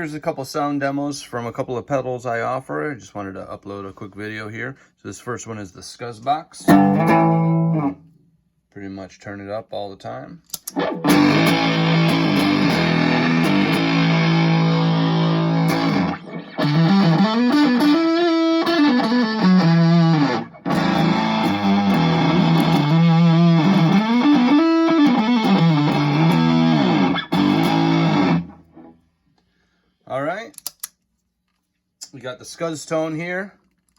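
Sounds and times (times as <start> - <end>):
distorted electric guitar riff: 6.7 - 8.0, 10.7 - 29.0.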